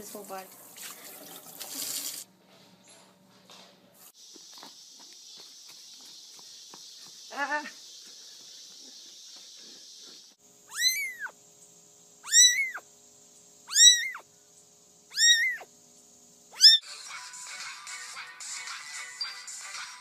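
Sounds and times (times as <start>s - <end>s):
cat meowing: 10.7s - 11.3s, 12.2s - 12.8s, 13.7s - 14.2s, 15.1s - 15.7s, 16.6s - 16.8s.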